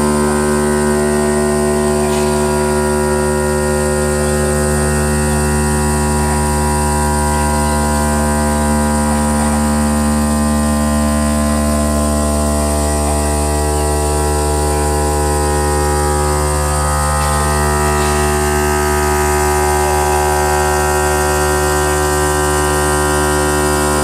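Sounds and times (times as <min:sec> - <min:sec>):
stone cutting machine humming: 0:00.0 - 0:24.0.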